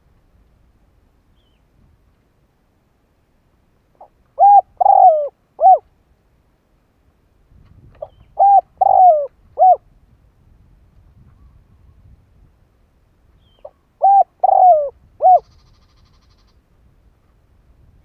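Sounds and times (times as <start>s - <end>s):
dove cooing: 4.0s - 5.9s, 8.0s - 9.8s, 13.6s - 16.5s.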